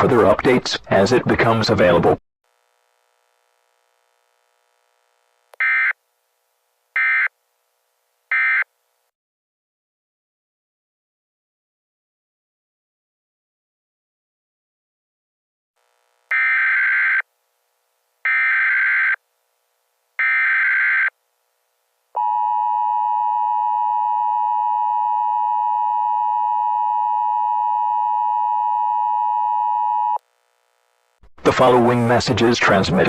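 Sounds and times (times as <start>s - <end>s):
buzzing data tones: 6.9s - 7.4s, 15.8s - 17.3s, 18.2s - 19.3s, 20.2s - 21.2s.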